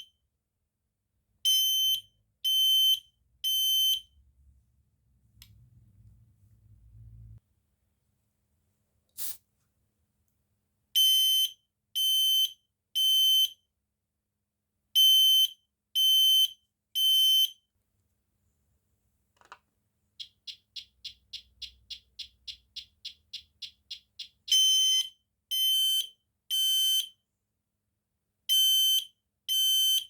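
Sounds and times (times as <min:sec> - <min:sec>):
smoke alarm beeping: 0:01.5 - 0:04.1, 0:20.2 - 0:27.1
brief hiss: 0:09.2 - 0:09.5.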